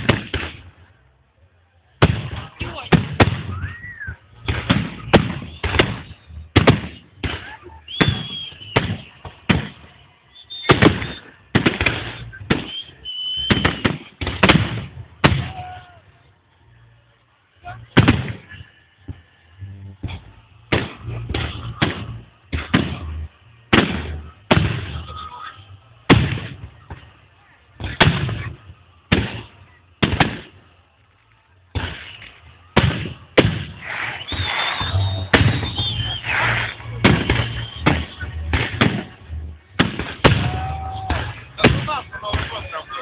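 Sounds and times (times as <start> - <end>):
fireworks bursting: 0.0 - 1.1, 1.9 - 43.0.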